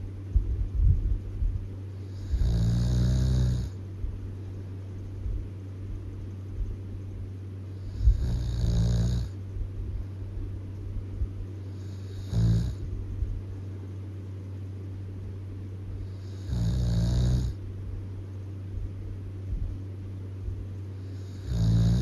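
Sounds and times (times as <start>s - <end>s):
low hum: 0.0s - 22.0s
loud snoring: 2.1s - 3.8s, 7.8s - 9.4s, 11.8s - 12.8s, 16.1s - 17.6s, 21.2s - 22.0s.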